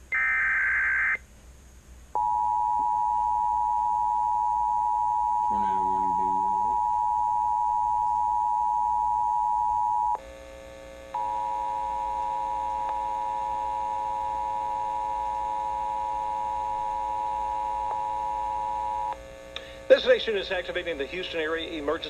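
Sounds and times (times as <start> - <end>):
electronic two-tone alert: 5.5 - 7.1.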